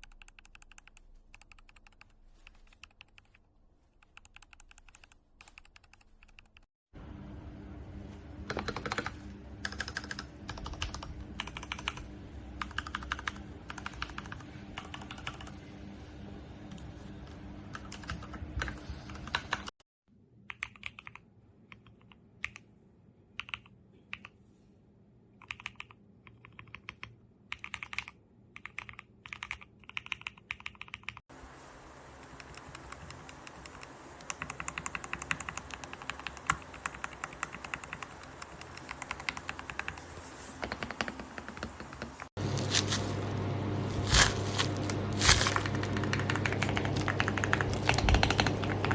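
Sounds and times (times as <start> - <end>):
mechanical keyboard typing: 0.0 - 3.4, 4.0 - 6.7, 8.4 - 15.6, 17.7 - 19.7, 20.5 - 22.7, 23.4 - 24.4, 25.4 - 31.2, 32.3 - 42.3, 45.2 - 48.9.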